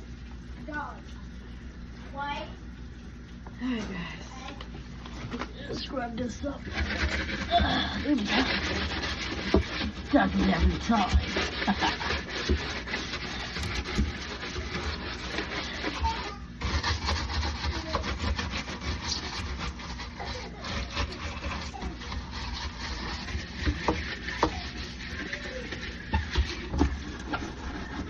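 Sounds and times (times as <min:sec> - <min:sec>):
scratchy scrubbing by hand: 0:05.8 - 0:28.0.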